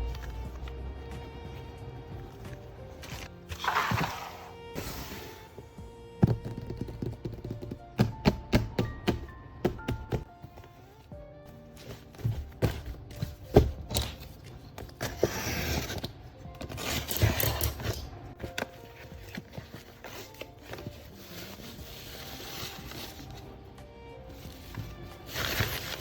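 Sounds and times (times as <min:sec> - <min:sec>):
paper rustling: 0:00.0 - 0:05.5, 0:10.3 - 0:23.6, 0:24.3 - 0:26.0
faint background music: 0:00.0 - 0:26.0
paper taps and knocks: 0:06.2 - 0:10.3.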